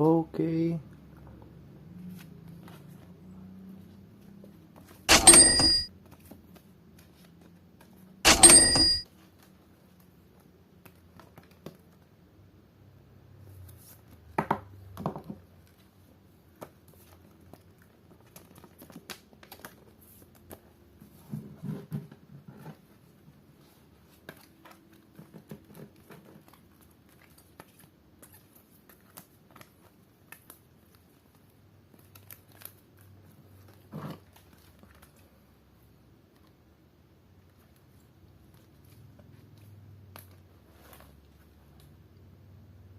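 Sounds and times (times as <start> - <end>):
trading cards rustling and tapping: 13.9 - 35.6.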